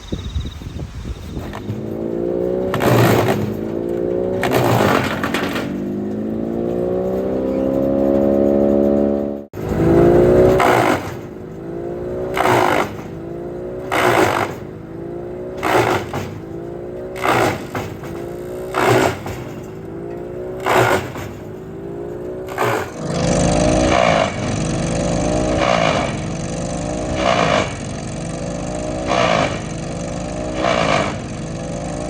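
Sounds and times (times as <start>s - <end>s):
wood chipper engine: 1.3s - 8.9s, 9.6s - 32.0s
wood chipping bursts: 1.4s - 8.2s, 9.6s - 24.6s, 28.9s - 31.4s.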